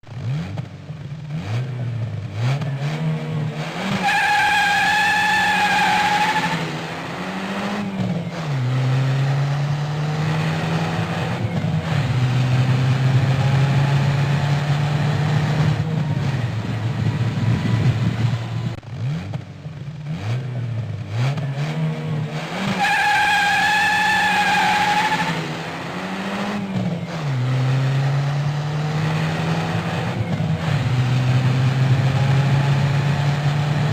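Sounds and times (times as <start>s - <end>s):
car engine revving: 0.0s - 33.9s
high squeal: 22.7s - 25.4s.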